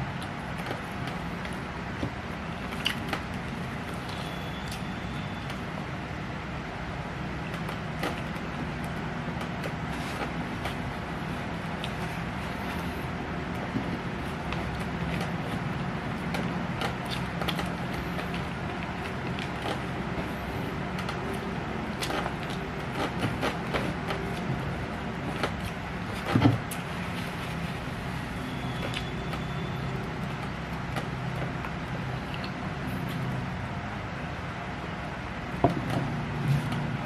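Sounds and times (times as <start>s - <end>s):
chewing and mouth clicks: 2.7s - 3.2s, 16.2s - 19.8s, 32.2s - 33.3s.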